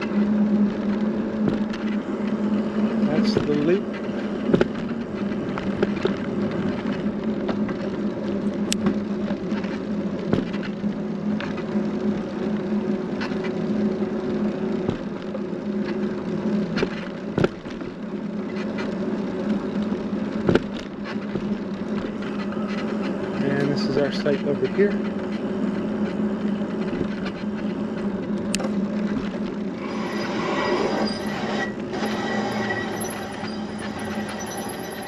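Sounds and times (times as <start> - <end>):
sharp clicks and knocks: 0.0 - 2.4, 3.0 - 7.9, 8.7 - 10.8, 14.8 - 16.0, 16.7 - 19.0, 19.8 - 25.4
vehicle engine hum: 0.0 - 35.0.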